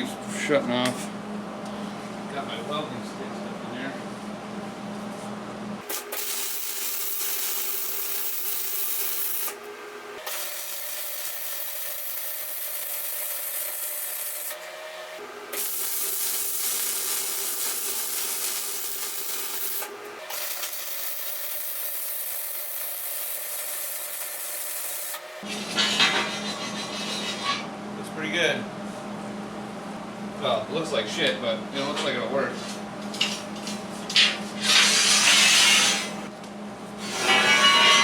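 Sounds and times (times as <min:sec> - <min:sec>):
arc welder crackling hiss: 0:05.8 - 0:09.6, 0:10.2 - 0:25.3, 0:34.6 - 0:36.2.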